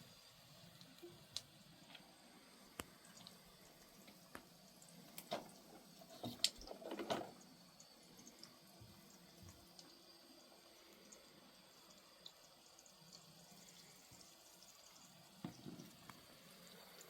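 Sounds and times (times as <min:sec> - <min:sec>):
water drips and splashes: 0:02.8 - 0:17.0.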